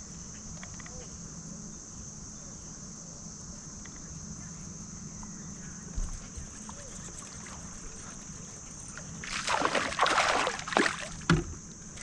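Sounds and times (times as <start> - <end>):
water splashing around kayak: 6.4 - 12.0.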